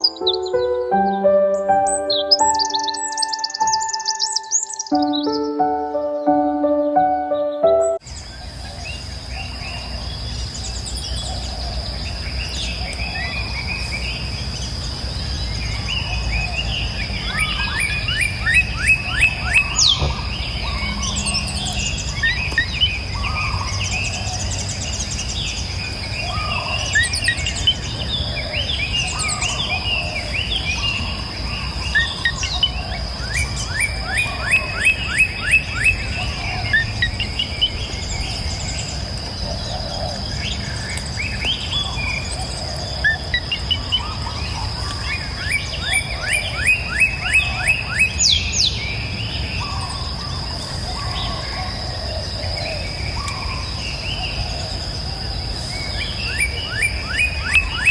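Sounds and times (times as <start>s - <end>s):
birds chirping and singing: 0.0s - 5.8s
rapid down-slurred bird notes: 0.0s - 8.0s.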